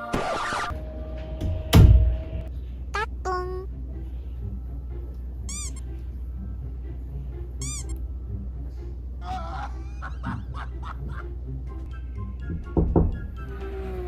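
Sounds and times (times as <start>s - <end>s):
steady low hum: 0.7s - 14.0s
high rising and falling squeaks: 5.4s - 6.0s, 7.6s - 8.2s.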